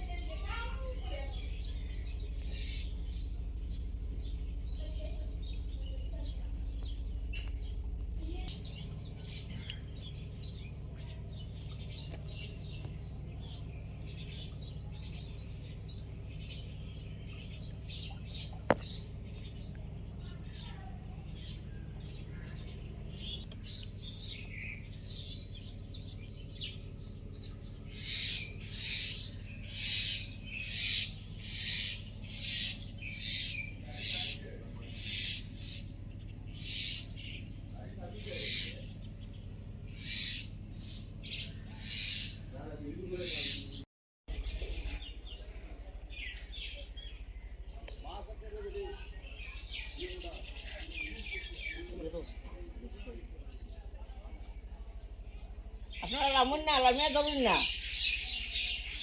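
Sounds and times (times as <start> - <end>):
birds chirping: 0.0 - 59.0
steady low hum: 0.0 - 59.0
loud repeated bird call: 27.4 - 37.4.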